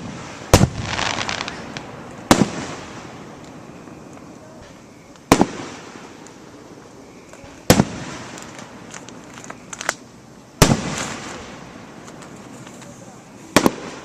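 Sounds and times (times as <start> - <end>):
fireworks bangs echoing: 0.0 - 3.7, 4.6 - 6.4, 7.4 - 8.9, 10.6 - 12.4, 13.5 - 14.0
small fireworks pops: 0.0 - 14.0.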